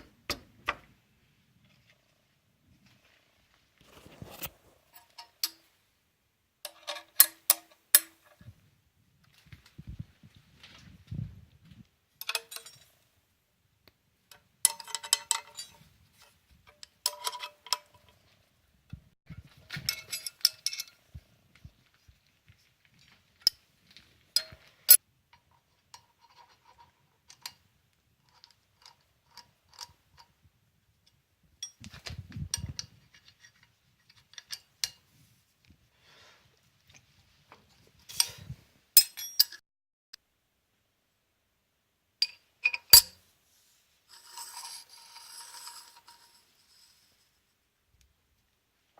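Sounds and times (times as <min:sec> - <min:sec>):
metal tools clinking and clattering: 0:12.2 - 0:12.9, 0:14.7 - 0:15.9, 0:17.0 - 0:18.1, 0:19.7 - 0:21.0, 0:38.1 - 0:39.6
metallic ring: 0:39.0 - 0:39.6, 0:42.2 - 0:43.2.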